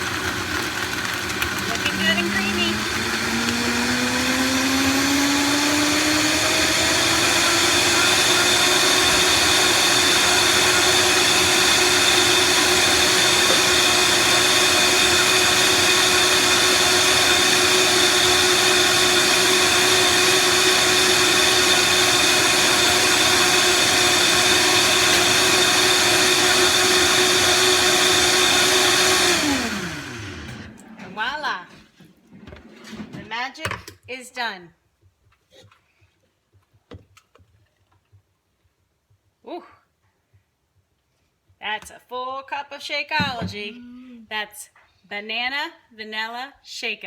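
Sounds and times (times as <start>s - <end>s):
blender motor whining: 0.0s - 31.4s.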